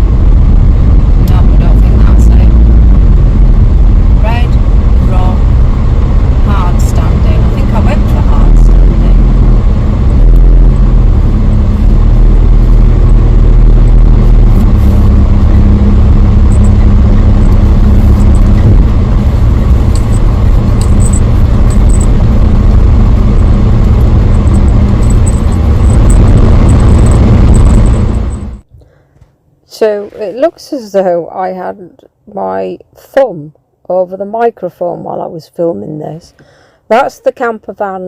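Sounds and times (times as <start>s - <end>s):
thumb rumbling over microphone: 0.0s - 28.8s.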